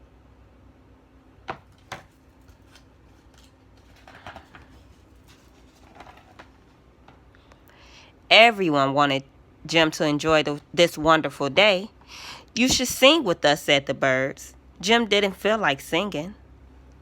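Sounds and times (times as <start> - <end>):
soft paper rustles: 1.7 - 6.8.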